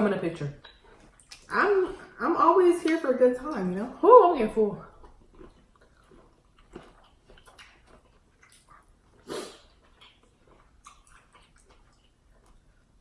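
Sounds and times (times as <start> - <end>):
wet lip and tongue clicks: 0.6 - 1.5, 5.0 - 12.6
soft chewing: 0.6 - 2.2, 4.5 - 13.0.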